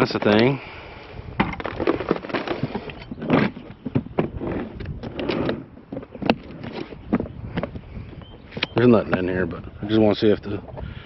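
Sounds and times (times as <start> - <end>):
household items knocking and rattling: 1.4 - 7.8.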